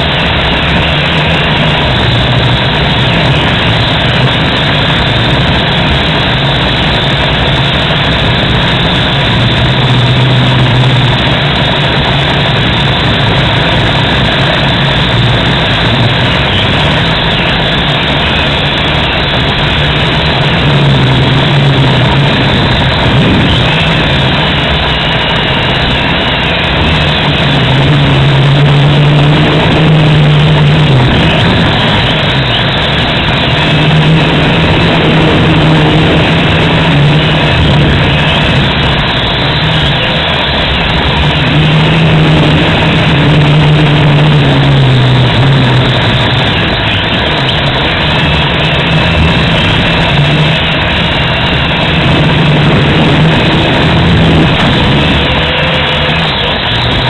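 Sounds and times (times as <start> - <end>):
drone motors humming: 0.0 - 57.0
rushing noise: 0.0 - 57.0.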